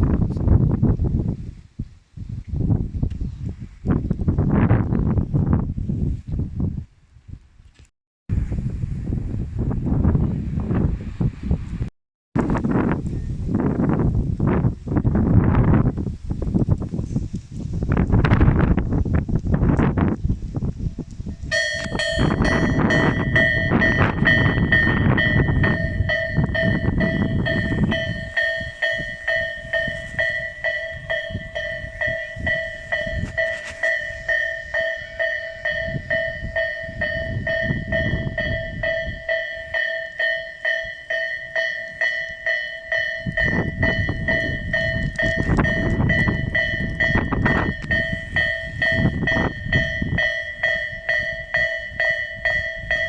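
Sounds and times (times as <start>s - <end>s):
wind buffeting microphone: 0.0s - 53.0s
level crossing bell ringing: 21.5s - 53.0s.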